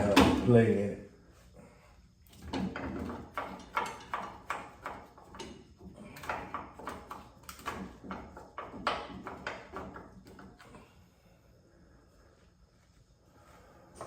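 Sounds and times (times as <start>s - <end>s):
hand tools clicking on bolts: 2.4s - 10.6s.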